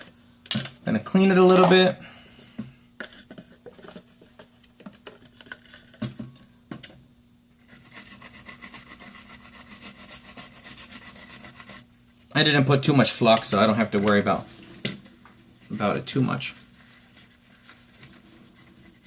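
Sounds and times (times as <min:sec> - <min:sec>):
rag scrubbing circuit board: 0:07.6 - 0:11.9.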